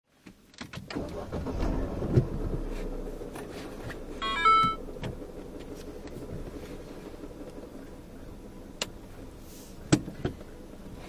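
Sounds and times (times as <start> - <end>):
low car engine rumble: 0.3 - 11.0
electronic beeps: 4.2 - 4.8.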